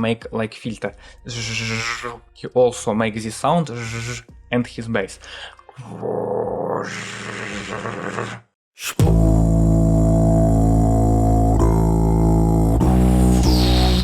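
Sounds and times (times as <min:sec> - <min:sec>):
beatbox throat bass drone: 0:03.8 - 0:04.3, 0:08.9 - 0:14.0.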